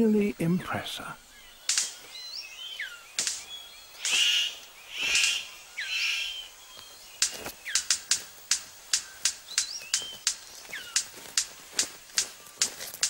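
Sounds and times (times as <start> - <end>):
birds whistled calls: 1.2 - 13.0
bird sharp clicks and snaps: 1.6 - 2.2, 3.1 - 4.4, 7.2 - 13.0.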